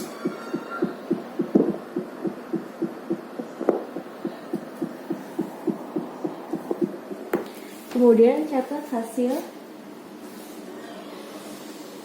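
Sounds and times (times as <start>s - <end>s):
rapid fetal heartbeat pulsing: 0.0s - 7.0s.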